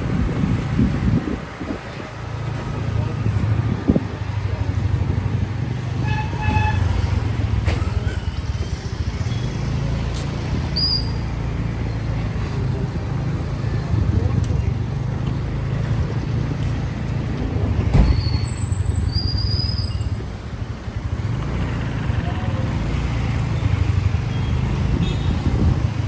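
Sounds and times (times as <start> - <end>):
road and wind noise: 0.0 - 26.0
horn toots: 6.0 - 7.2
vehicle engine running: 19.6 - 26.0.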